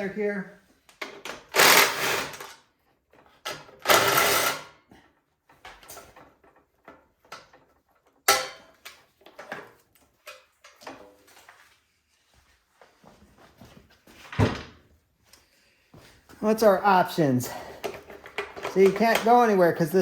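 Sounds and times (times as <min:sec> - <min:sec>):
metal parts clicking and knocking: 0:01.0 - 0:02.6, 0:03.4 - 0:04.7, 0:17.8 - 0:19.5
power tool loosening bolts: 0:01.0 - 0:02.7, 0:03.4 - 0:04.8, 0:17.7 - 0:19.6.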